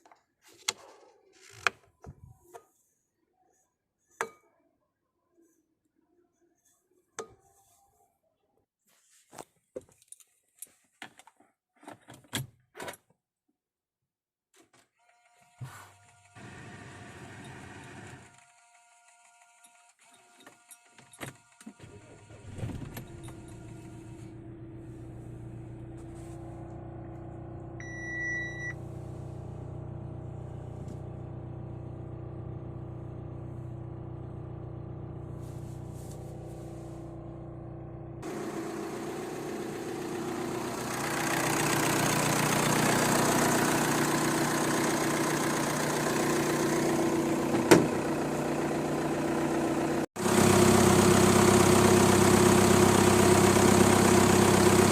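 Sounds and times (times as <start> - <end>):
car engine starting and idling: 16.1 - 18.4, 21.8 - 54.9.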